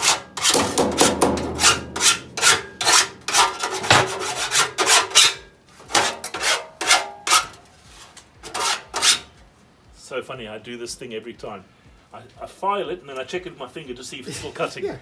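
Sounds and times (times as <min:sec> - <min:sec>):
hand file rasping on steel: 0:00.0 - 0:09.3.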